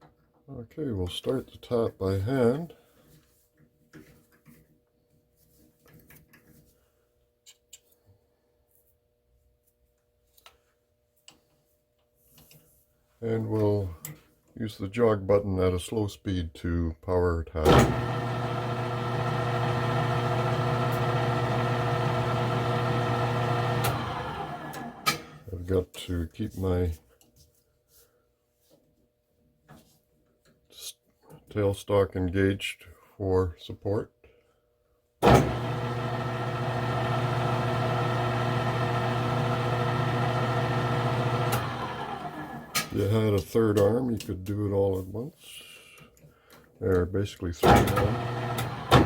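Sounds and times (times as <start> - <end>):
lathe motor running: 17.7 - 25.2, 35.2 - 42.8, 47.7 - 49.0
lathe motor stopping click: 17.7 - 25.4, 35.2 - 42.9, 47.6 - 49.0.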